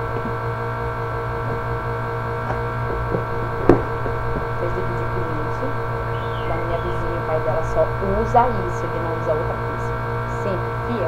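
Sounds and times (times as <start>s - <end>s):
sharp knock: 3.7s - 4.1s.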